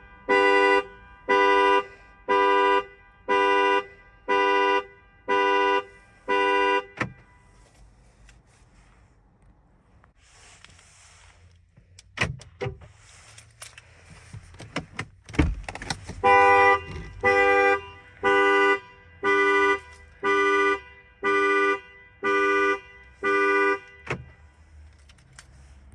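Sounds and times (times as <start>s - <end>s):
car horn alarm pulsing: 0.0s - 7.9s, 16.2s - 24.8s
sharp clicks and knocks: 13.7s - 16.2s.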